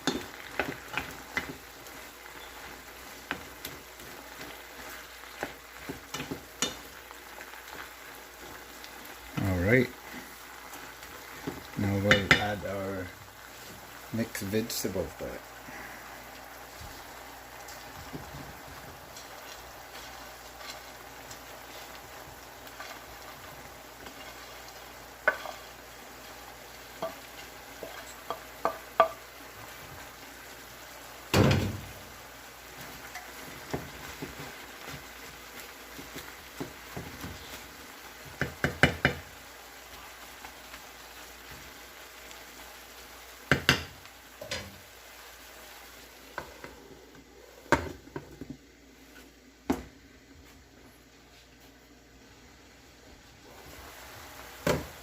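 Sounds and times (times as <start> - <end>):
food sizzling in a pan: 0.0 - 55.0
utensil knocking and scraping pan: 25.2 - 25.6.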